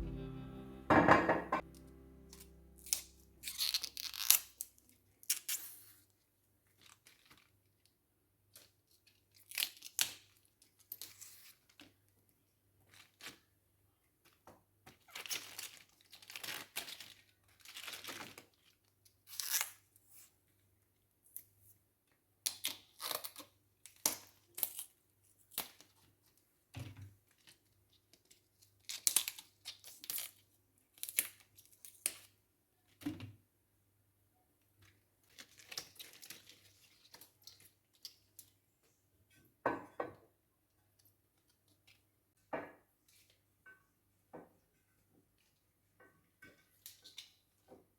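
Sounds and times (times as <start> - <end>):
packaging torn and crinkled: 35.3 - 37.6.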